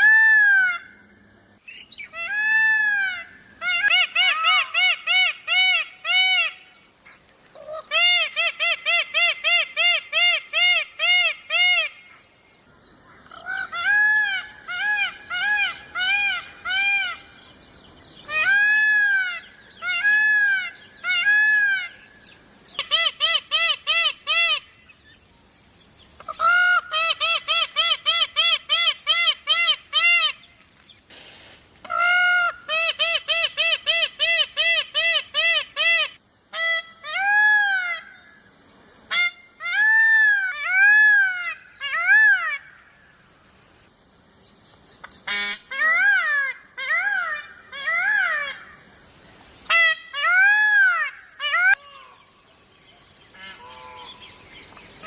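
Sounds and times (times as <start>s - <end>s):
peafowl honking calls: 2.1s - 6.6s, 13.2s - 17.4s, 18.3s - 22.1s, 22.8s - 24.9s, 26.1s - 30.4s, 31.8s - 38.4s, 39.1s - 42.9s, 45.2s - 48.8s, 49.7s - 52.3s, 53.3s - 54.4s.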